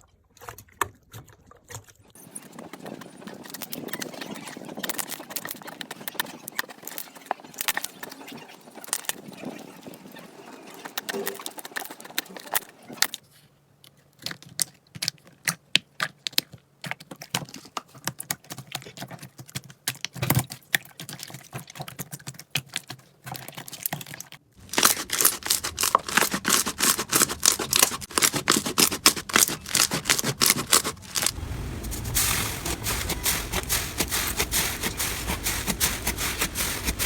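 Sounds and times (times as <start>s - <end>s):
slime squished by hands: 16.9s - 37.0s
sticky clicks and pops: 24.7s - 31.4s.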